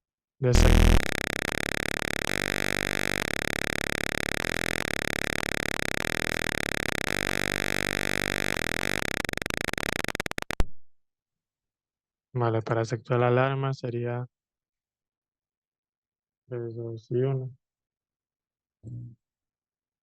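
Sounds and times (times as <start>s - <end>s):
buzzy alarm tone: 0.6s - 10.6s
small regular clicks: 0.6s - 10.7s.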